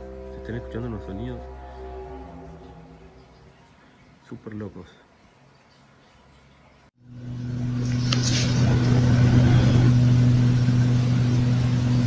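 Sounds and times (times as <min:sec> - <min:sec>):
low droning hum: 0:00.0 - 0:04.3, 0:07.0 - 0:12.0.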